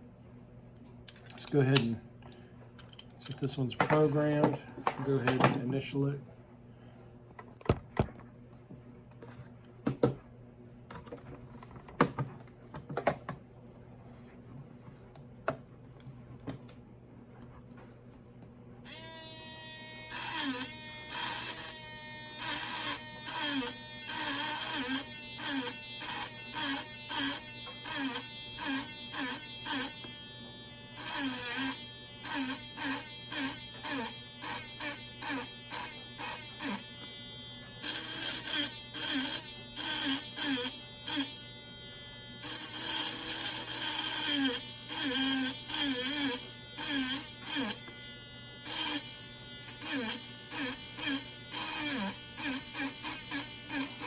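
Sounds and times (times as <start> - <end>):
engraving pen buzzing: 18.9 - 54.0.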